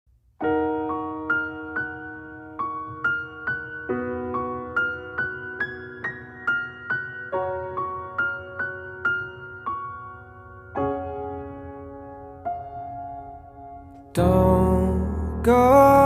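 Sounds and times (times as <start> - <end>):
gentle piano melody: 0.3 - 16.0.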